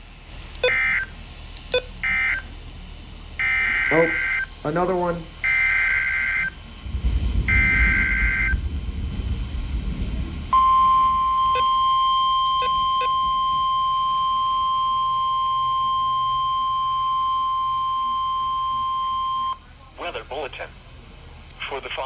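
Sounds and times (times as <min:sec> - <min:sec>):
steady warning alarm tone: 0:00.0 - 0:02.5, 0:03.4 - 0:06.6, 0:10.5 - 0:19.6
screeching digital data bursts: 0:00.6 - 0:01.0, 0:11.4 - 0:13.8
low rumble: 0:06.8 - 0:10.9.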